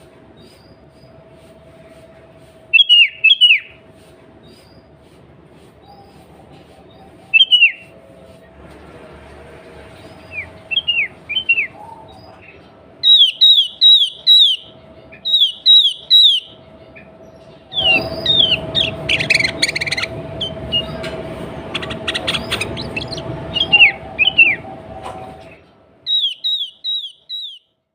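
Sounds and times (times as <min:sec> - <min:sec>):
bird calling with whistled notes: 0:02.7 - 0:03.8, 0:05.8 - 0:08.0, 0:10.1 - 0:24.9, 0:26.1 - 0:27.7
bird harsh chattering: 0:10.3 - 0:17.0, 0:17.7 - 0:24.9, 0:26.1 - 0:27.6.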